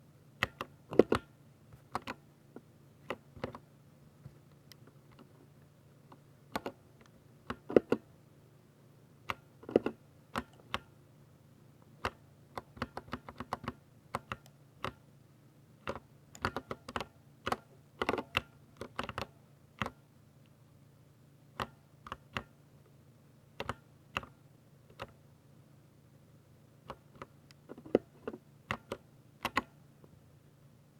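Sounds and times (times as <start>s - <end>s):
mechanical keyboard typing: 12.0s - 15.0s, 15.8s - 20.0s, 28.7s - 29.7s.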